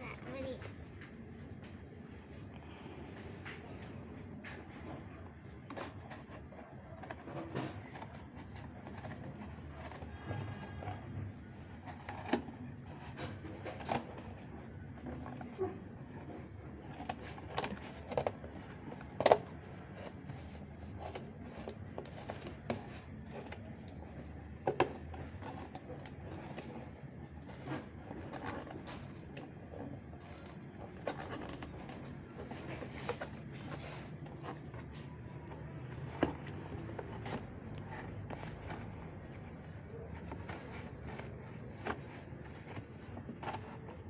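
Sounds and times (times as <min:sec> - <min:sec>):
packaging rustling and scraping: 0:00.9 - 0:44.0.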